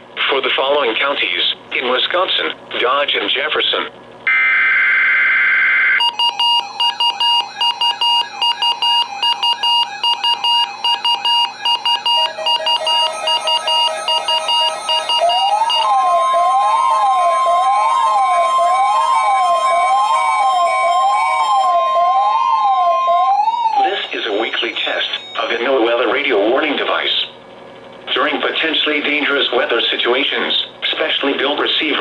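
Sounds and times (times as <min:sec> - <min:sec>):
siren rising and falling: 0:04.3 - 0:26.0
steady alarm tone: 0:04.3 - 0:27.9
rapid electronic beeping: 0:06.0 - 0:22.4, 0:23.2 - 0:27.1
steady high tone: 0:06.0 - 0:27.1.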